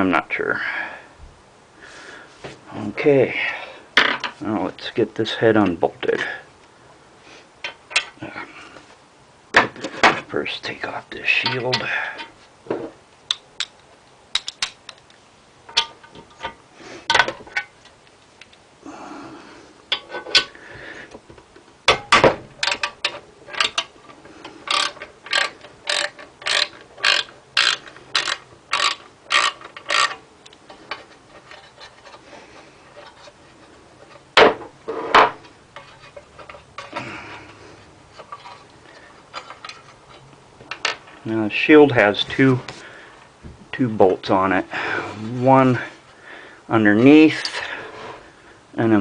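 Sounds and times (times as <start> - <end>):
socket ratchet clicking: 24.7 - 30.2.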